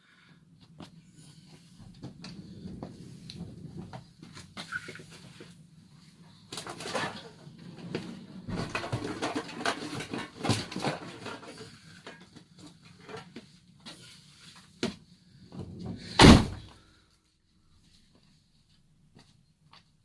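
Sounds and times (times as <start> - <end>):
knocks and clatter: 6.6 - 11.6
door slamming: 16.0 - 16.7.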